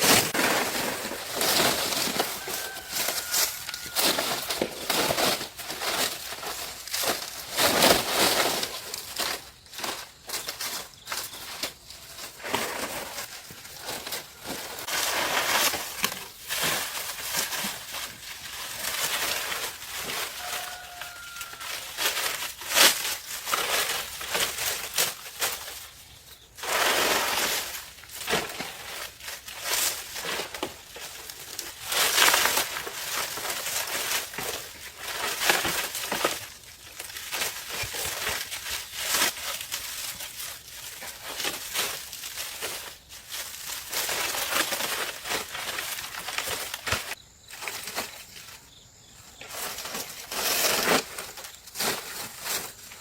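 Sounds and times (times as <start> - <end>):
crinkling and crunching handling noises: 0.0 - 53.0.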